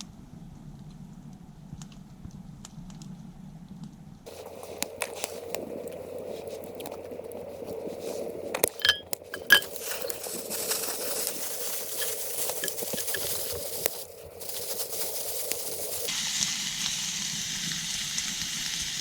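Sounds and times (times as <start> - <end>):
campfire crackling and popping: 3.8 - 19.0
steady sizzling hiss: 4.2 - 19.0
metal cookware clinks: 8.8 - 10.2, 11.9 - 13.4.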